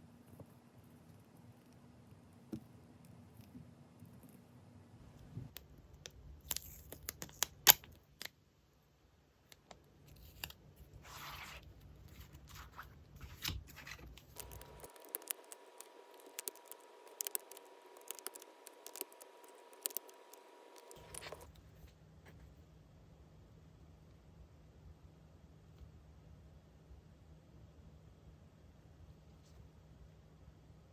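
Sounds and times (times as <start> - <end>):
paper rustling: 10.2 - 21.5
sharp clicks and taps: 14.2 - 21.5.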